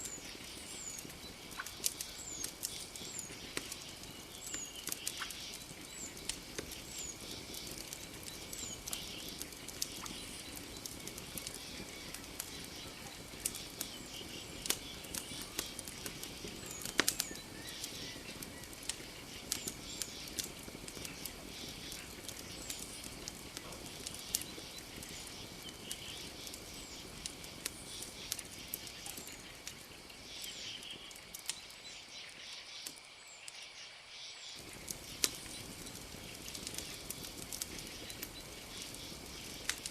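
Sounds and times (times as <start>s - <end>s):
campfire crackling and popping: 0.0s - 33.1s, 34.6s - 39.9s.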